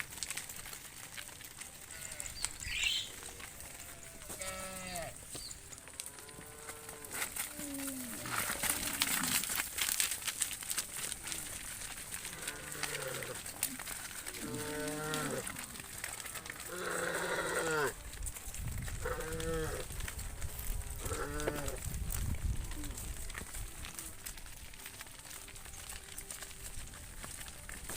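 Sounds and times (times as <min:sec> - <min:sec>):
crackling and rustling: 0:00.0 - 0:27.9
cattle mooing: 0:02.0 - 0:05.5, 0:14.4 - 0:15.6.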